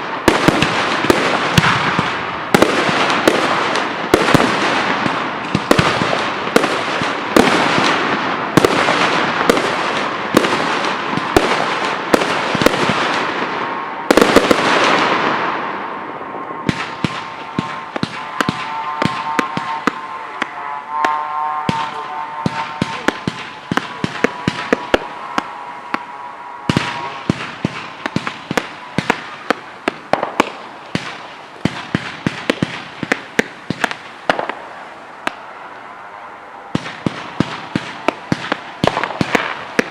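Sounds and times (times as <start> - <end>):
fireworks bangs and crackling: 0.0 - 35.9, 36.7 - 39.9
continuous hiss: 0.0 - 39.9
whistling tone: 16.4 - 27.2.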